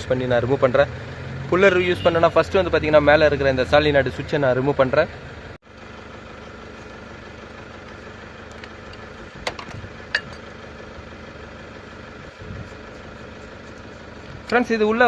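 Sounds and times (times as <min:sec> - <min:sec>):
mechanical hum: 0:05.7 - 0:14.5.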